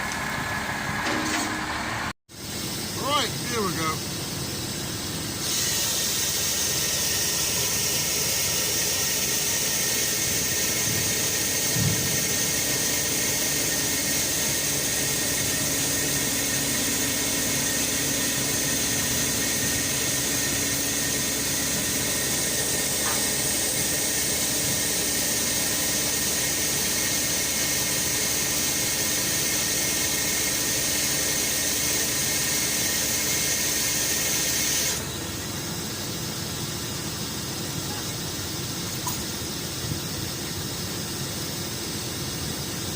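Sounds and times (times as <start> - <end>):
truck engine and hydraulics: 0.0 - 42.9
constant high hiss: 2.4 - 5.3.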